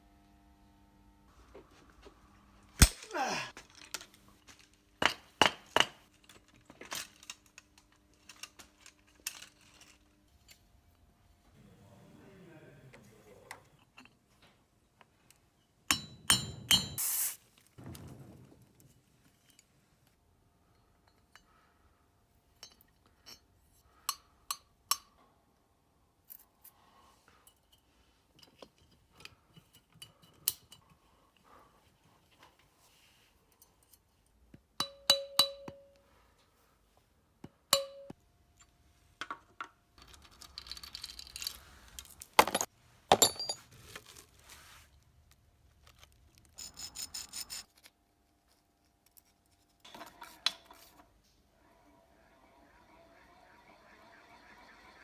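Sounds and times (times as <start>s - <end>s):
metal tools clinking: 40.0s - 43.7s.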